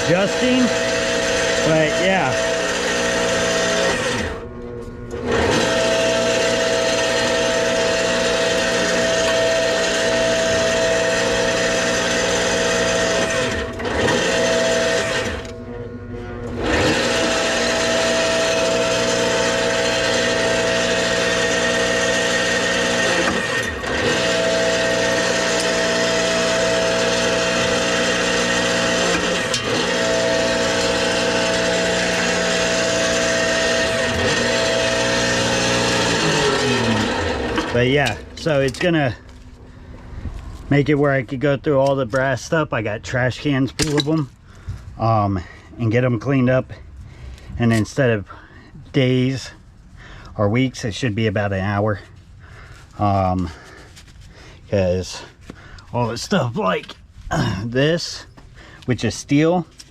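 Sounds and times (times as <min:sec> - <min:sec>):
power tool motor whine: 0:00.0 - 0:39.4.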